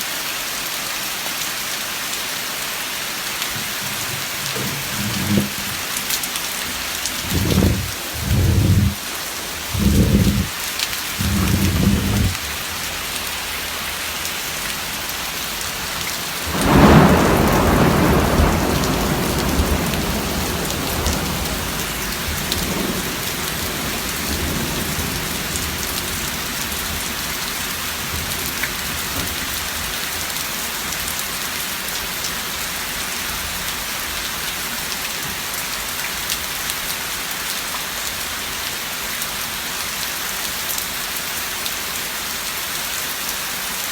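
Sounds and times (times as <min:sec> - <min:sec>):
steady rain: 0:00.0 - 0:43.9
thunder rumbling: 0:03.5 - 0:10.5, 0:11.2 - 0:12.6, 0:16.5 - 0:27.1.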